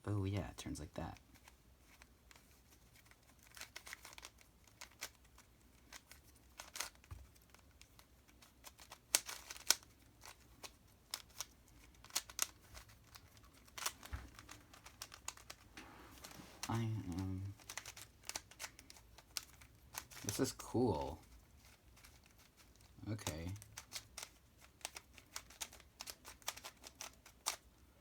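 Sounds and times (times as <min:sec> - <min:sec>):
plastic puzzle clicking: 0:01.2 - 0:27.8.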